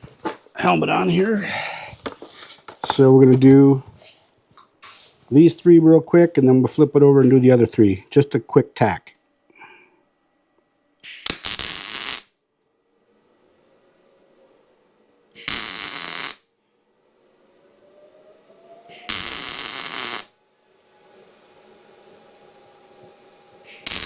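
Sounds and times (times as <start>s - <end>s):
welder arc crackling: 11.0s - 12.3s, 15.3s - 16.4s, 18.9s - 20.3s, 23.7s - 24.0s.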